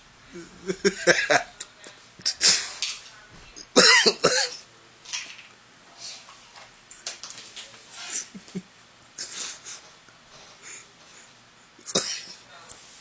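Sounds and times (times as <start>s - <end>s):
person coughing: 3.8s - 4.6s, 11.8s - 12.4s.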